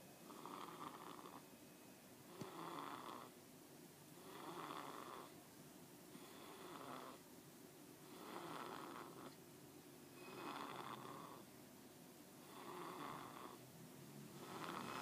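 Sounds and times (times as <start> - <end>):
faint snoring: 0.2 - 1.5, 2.3 - 3.4, 4.2 - 5.4, 6.1 - 7.2, 8.0 - 9.4, 10.2 - 11.5, 12.4 - 13.6, 14.3 - 15.0.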